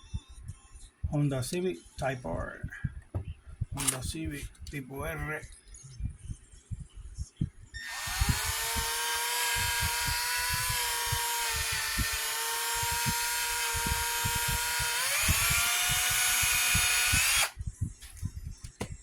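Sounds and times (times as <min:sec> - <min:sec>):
small electric drill whining: 0:07.8 - 0:17.6.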